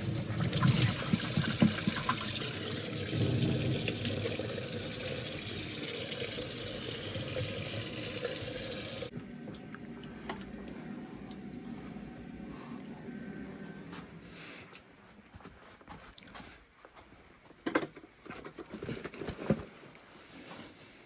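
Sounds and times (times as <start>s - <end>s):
running water rushing: 0.0s - 9.1s.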